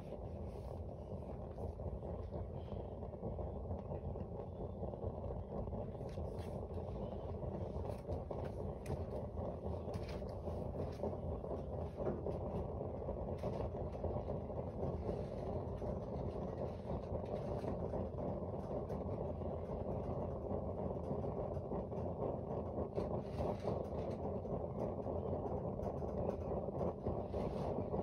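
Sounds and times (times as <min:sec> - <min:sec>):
heater burner burning: 0:00.0 - 0:28.0.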